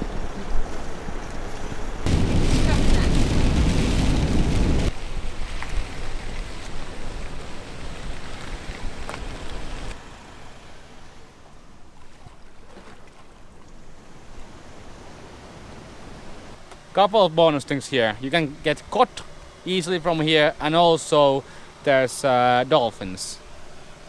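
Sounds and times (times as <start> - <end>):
van road noise in rain: 0.0 - 11.7.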